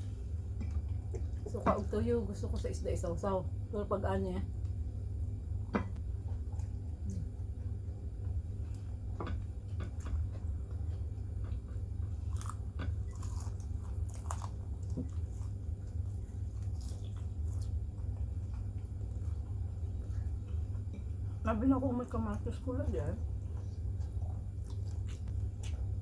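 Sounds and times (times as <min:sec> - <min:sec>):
steady low hum: 0:00.0 - 0:26.0
chewing and biting food: 0:06.3 - 0:21.4, 0:23.2 - 0:26.0.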